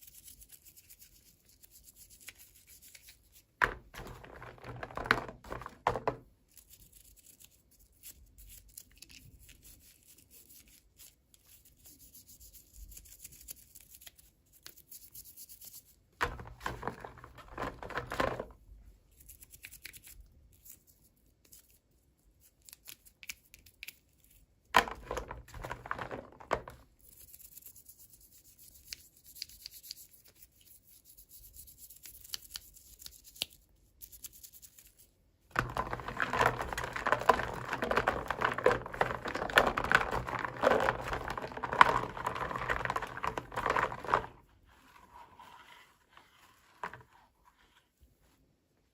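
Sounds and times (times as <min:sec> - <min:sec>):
packaging clicks and rustles: 0:35.6 - 0:44.4.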